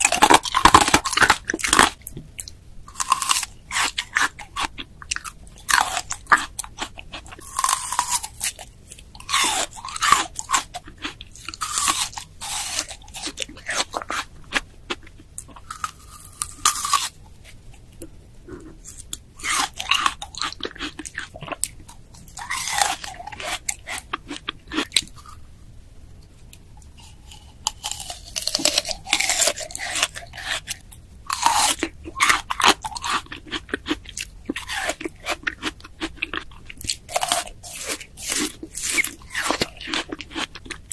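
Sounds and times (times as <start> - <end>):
crunchy chewing of pear: 0.0 - 25.6, 26.2 - 40.9.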